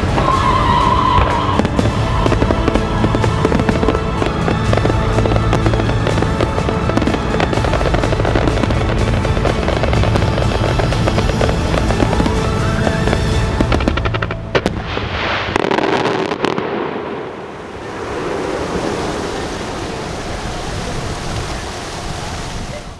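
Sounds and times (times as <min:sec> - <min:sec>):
firecrackers crackling: 0:00.0 - 0:21.5.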